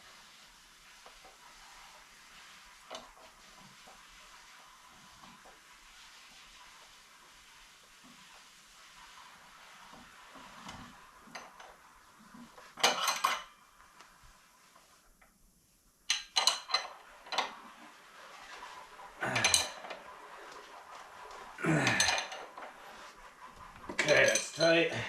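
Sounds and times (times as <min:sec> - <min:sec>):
metal hand tools clinking: 0:24.0 - 0:24.7.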